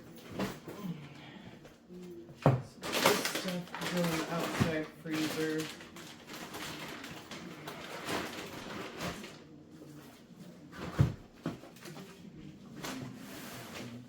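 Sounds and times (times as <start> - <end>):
packaging rustling: 2.8 - 9.6.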